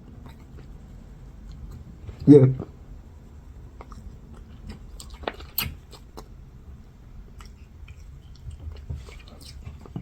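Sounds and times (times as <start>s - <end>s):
person chewing wetly: 3.6s - 6.5s, 7.2s - 10.0s.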